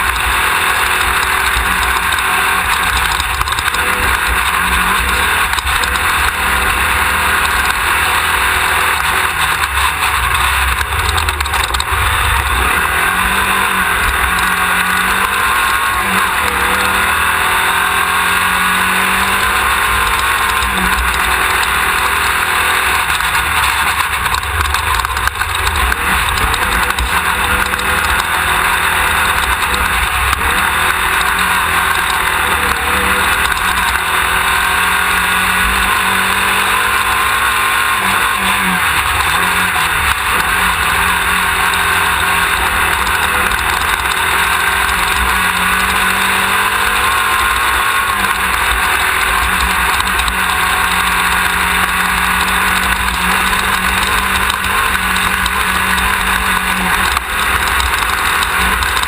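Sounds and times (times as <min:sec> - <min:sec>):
race buggy engine droning: 0:00.0 - 0:59.0
heavy low rumble: 0:09.6 - 0:15.1.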